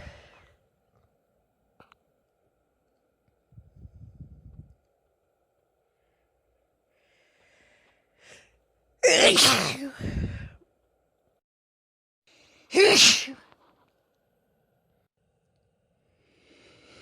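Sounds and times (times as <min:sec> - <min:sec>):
faint breath in: 0:06.0 - 0:08.6, 0:16.1 - 0:17.0
woman sneezing: 0:09.0 - 0:10.1, 0:12.7 - 0:13.5.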